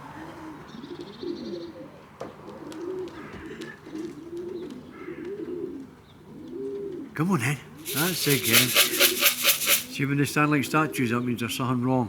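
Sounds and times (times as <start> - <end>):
pigeons cooing: 0.5 - 7.1
brief fine rattle: 7.8 - 10.0.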